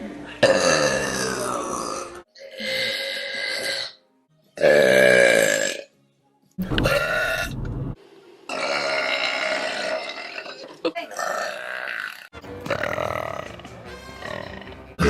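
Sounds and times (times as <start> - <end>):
woman burping: 0.4 - 4.0, 8.5 - 13.5.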